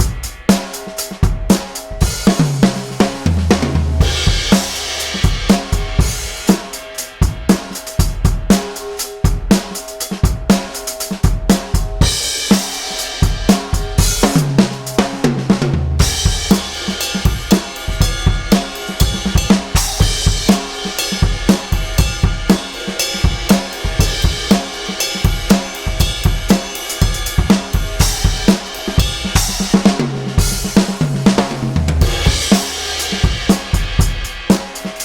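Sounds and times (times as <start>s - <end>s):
drum fill: 0.0s - 35.0s
drum kit groove: 0.0s - 35.0s.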